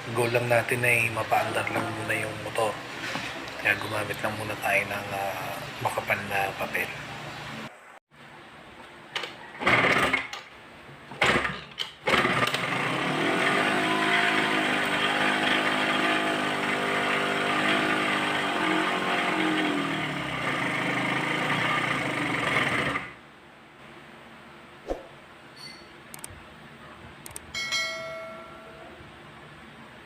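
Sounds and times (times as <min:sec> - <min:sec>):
scooter engine running: 0:12.1 - 0:23.1.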